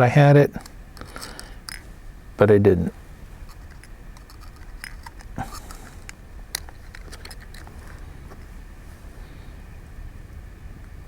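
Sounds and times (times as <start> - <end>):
steady low hum: 0.0 - 11.0
small tools clicking on metal parts: 0.6 - 1.8, 3.5 - 8.5.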